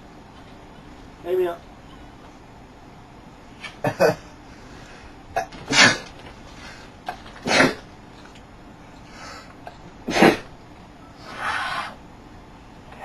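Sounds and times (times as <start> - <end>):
man sneezing: 7.4 - 7.8, 10.1 - 10.5.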